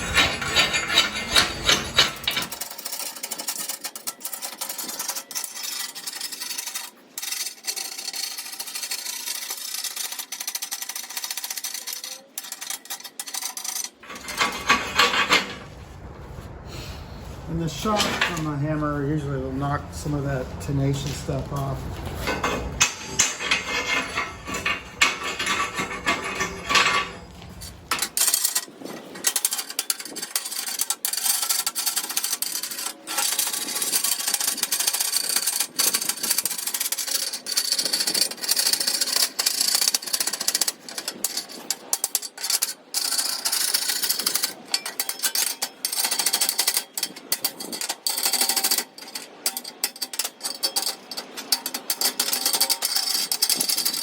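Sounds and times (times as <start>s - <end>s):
hammer and chisel on steel: 0.0s - 5.2s, 20.9s - 28.6s.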